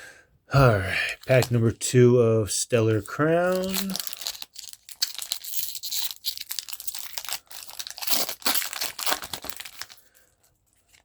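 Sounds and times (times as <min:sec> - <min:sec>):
foil wrapper crinkling and tearing: 0:03.1 - 0:11.0.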